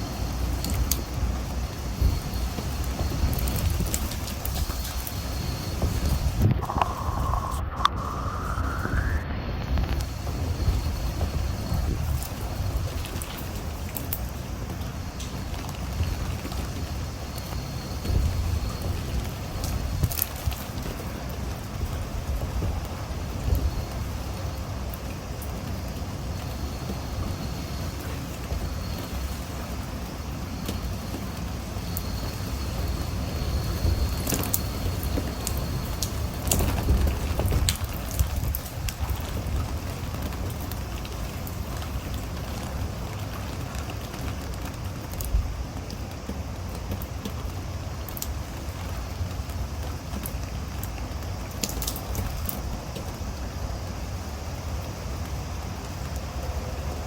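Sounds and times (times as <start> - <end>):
raindrops ticking on surface: 0.0 - 8.8, 9.8 - 57.0
strong wind rumbling: 0.0 - 13.2
gusting wind buffeting microphone: 0.0 - 50.2.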